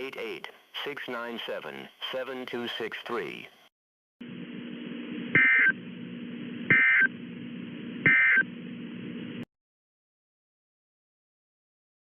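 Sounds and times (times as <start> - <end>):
low hum: 4.2 - 9.5
digital data tone bursts: 5.4 - 5.8, 6.7 - 7.1, 8.0 - 8.5.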